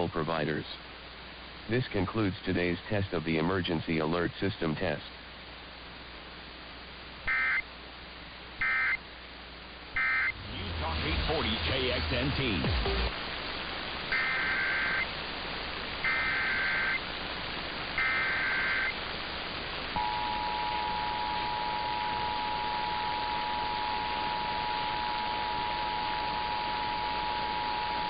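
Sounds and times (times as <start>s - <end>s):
background hiss: 0.0s - 28.0s
warbling digital data tones: 10.0s - 13.1s, 14.1s - 15.1s, 16.0s - 17.1s, 18.0s - 19.0s, 20.0s - 28.0s
two-tone attention signal: 20.0s - 28.0s.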